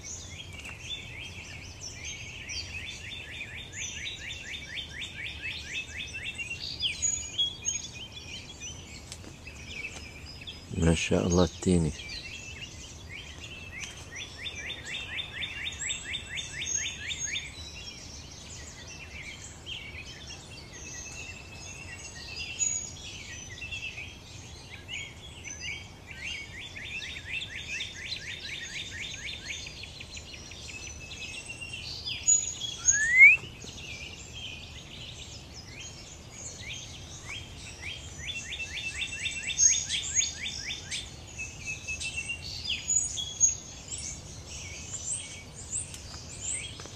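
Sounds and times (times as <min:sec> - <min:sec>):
birds chirping: 0:00.0 - 0:46.9
bird fast trill: 0:32.7 - 0:33.4
loud rising whistle: 0:32.8 - 0:33.4.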